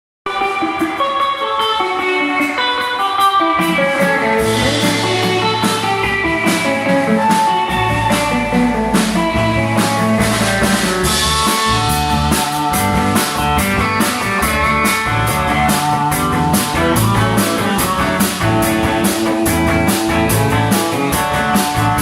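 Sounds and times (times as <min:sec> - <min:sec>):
drums: 0:00.3 - 0:22.0
guitar picking melodic line: 0:00.3 - 0:22.0
low bass notes: 0:04.2 - 0:22.0.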